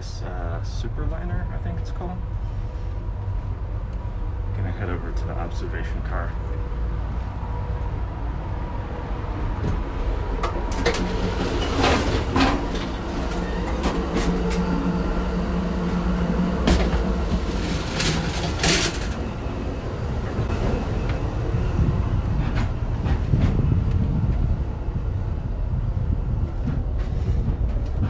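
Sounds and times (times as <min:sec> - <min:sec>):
train car rumbling on rails: 0:00.0 - 0:28.0
knocks and rattles: 0:16.6 - 0:19.3.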